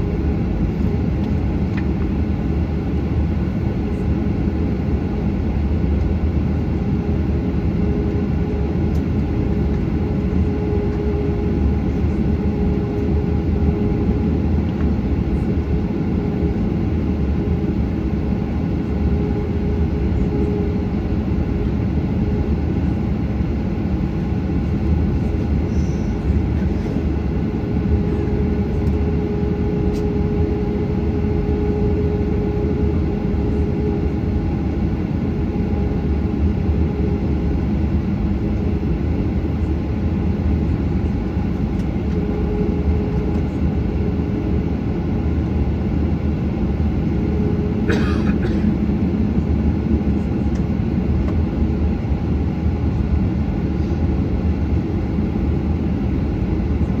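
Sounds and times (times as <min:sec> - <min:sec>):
jet engine cabin rumble: 0:00.0 - 0:57.0
steady hum: 0:00.0 - 0:57.0.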